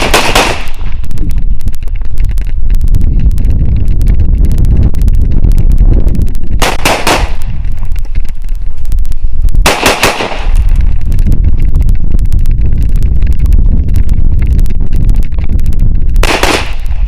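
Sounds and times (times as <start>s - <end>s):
gunshots: 0.0s - 1.0s, 6.6s - 7.6s, 9.6s - 10.7s, 16.2s - 17.0s.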